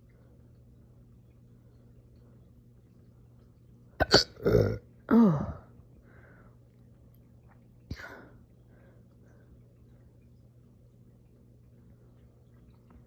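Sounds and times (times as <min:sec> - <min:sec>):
person burping: 0:04.0 - 0:05.6
person hiccuping: 0:04.0 - 0:05.6.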